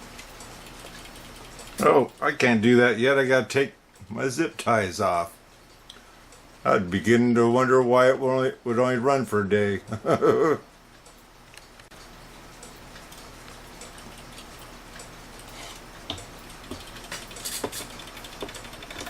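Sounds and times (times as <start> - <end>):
pendulum clock ticking: 10.9 - 17.4.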